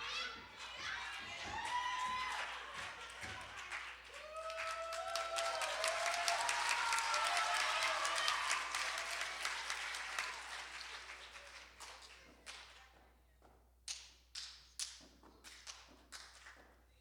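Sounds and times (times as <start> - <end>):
audience applause: 0.0 - 11.9.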